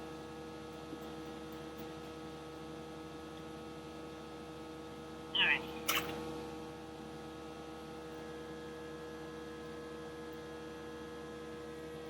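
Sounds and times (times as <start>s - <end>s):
steady electrical hum: 4.3s - 12.0s.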